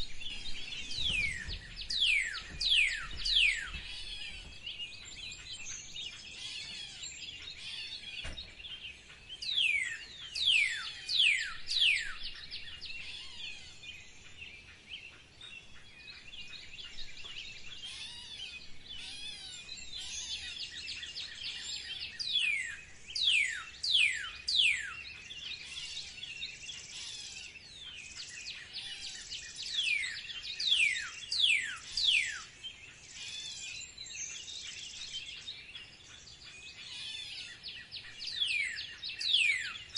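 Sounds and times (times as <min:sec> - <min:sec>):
bird whistling downward notes: 0:00.0 - 0:04.4
background birds chirping: 0:00.0 - 0:39.9.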